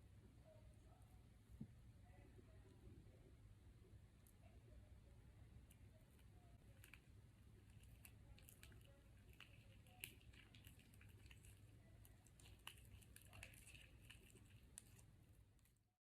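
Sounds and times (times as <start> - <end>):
low steady hum: 0.0 - 16.0
slime squishing in a bowl: 6.6 - 15.8.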